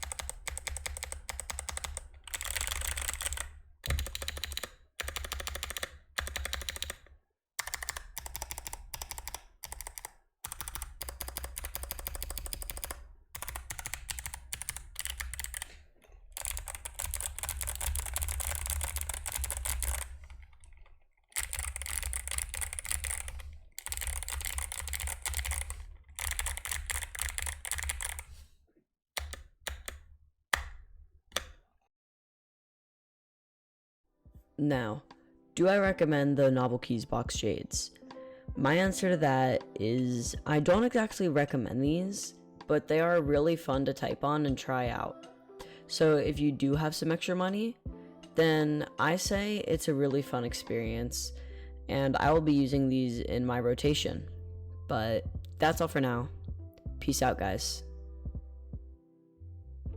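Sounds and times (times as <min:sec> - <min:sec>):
clicky mechanical keyboard typing: 0:00.0 - 0:28.3, 0:29.2 - 0:30.0.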